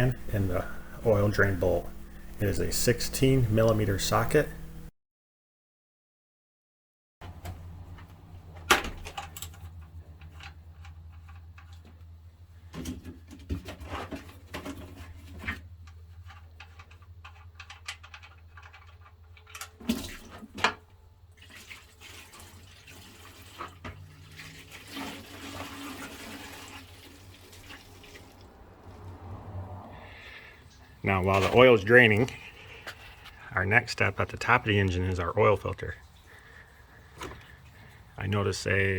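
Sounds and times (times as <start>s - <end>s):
low hum: 0.0s - 4.9s
oil pouring into a pan: 21.4s - 28.5s.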